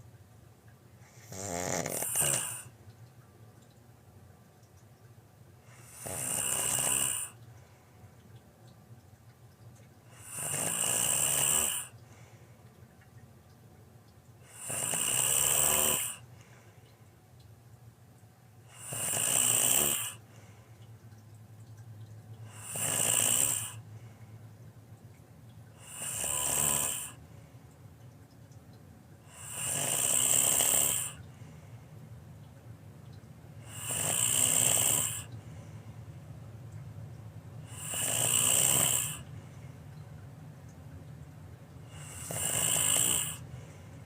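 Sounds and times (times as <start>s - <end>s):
faint steady low hum: 0.0s - 44.0s
person snoring loudly: 1.1s - 2.7s, 5.8s - 7.3s, 10.2s - 11.9s, 14.5s - 16.2s, 18.7s - 20.2s, 22.6s - 23.8s, 25.8s - 27.2s, 29.3s - 31.2s, 33.7s - 35.3s, 37.7s - 39.2s, 42.0s - 43.4s.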